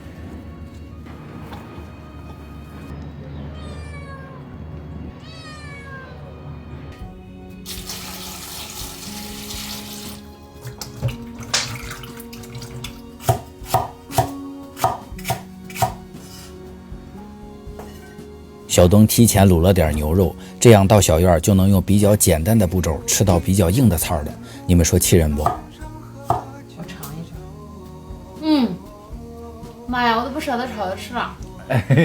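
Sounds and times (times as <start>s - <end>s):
cat meowing: 3.3s - 6.4s
water running: 7.6s - 32.0s.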